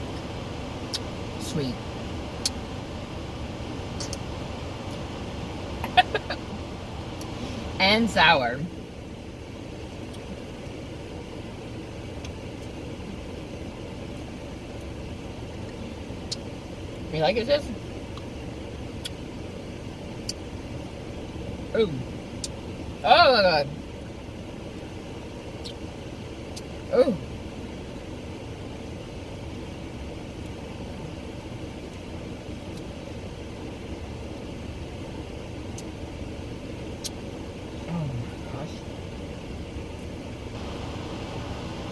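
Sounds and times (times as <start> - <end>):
steady low rumble: 0.0 - 41.9
faint hiss: 40.5 - 41.9.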